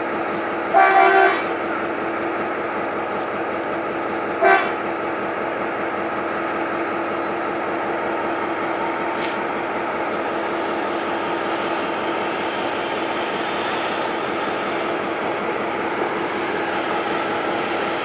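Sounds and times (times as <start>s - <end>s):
locomotive engine running: 0.0s - 18.0s
locomotive horn toot: 0.7s - 1.5s, 4.4s - 4.8s
brief high hiss: 9.2s - 9.5s.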